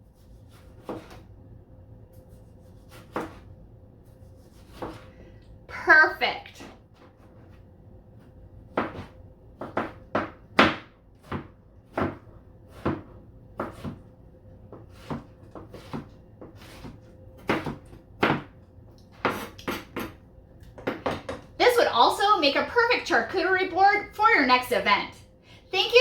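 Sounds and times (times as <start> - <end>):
knife chopping on plastic board: 0.5 - 1.2, 2.8 - 3.5, 4.5 - 5.0, 8.7 - 14.0, 14.7 - 20.2.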